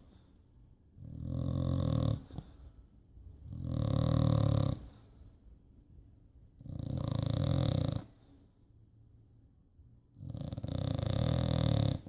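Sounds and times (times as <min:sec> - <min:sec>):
quiet breathing: 0:00.0 - 0:05.8, 0:06.6 - 0:08.9
dog snoring: 0:01.0 - 0:02.7, 0:03.4 - 0:05.1, 0:06.6 - 0:08.3, 0:10.2 - 0:12.0.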